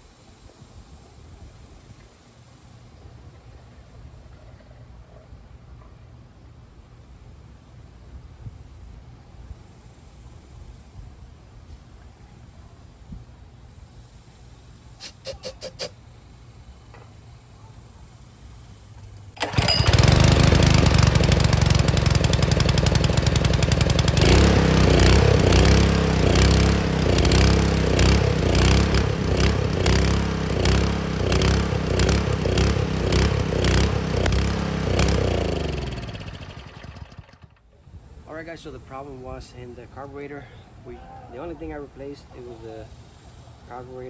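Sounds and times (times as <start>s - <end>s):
engine starting rattles: 19.2s - 37.7s
pressure washer engine running: 19.4s - 37.6s.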